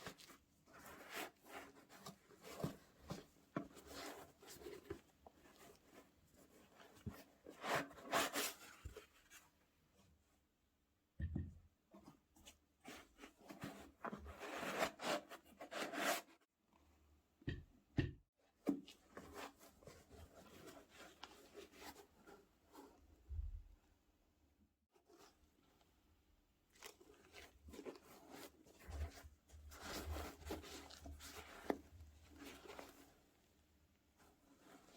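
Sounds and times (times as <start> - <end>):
rustling and rubbing of packaging: 0.0 - 10.1, 12.0 - 16.5, 18.5 - 23.1, 26.6 - 34.9.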